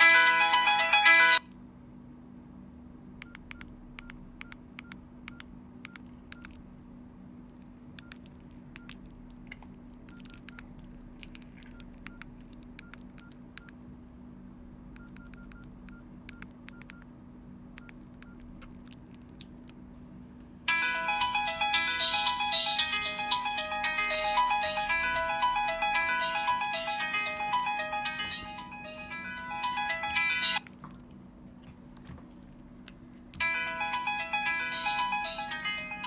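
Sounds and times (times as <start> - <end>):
faint steady hum: 0.0 - 36.0
phone keypad beeps: 3.2 - 6.6, 15.0 - 17.0.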